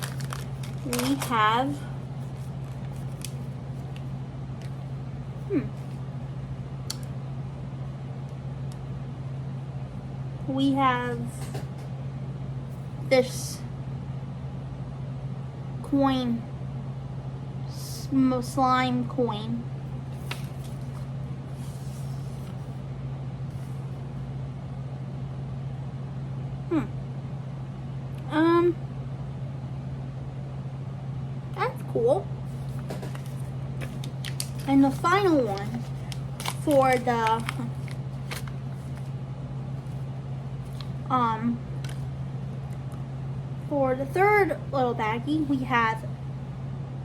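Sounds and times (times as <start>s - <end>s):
plastic packaging handled: 0.0s - 4.8s, 32.5s - 39.1s, 39.8s - 41.1s, 41.8s - 42.1s
low background hum: 0.0s - 47.0s.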